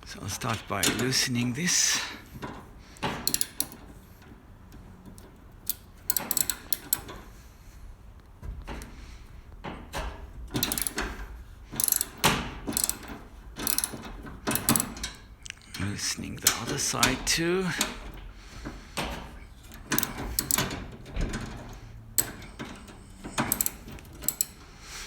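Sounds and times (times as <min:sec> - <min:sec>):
ratchet wrench clicking: 0:03.2 - 0:03.8, 0:05.6 - 0:07.2, 0:10.6 - 0:11.2, 0:11.8 - 0:15.0, 0:19.7 - 0:20.8, 0:22.2 - 0:24.7.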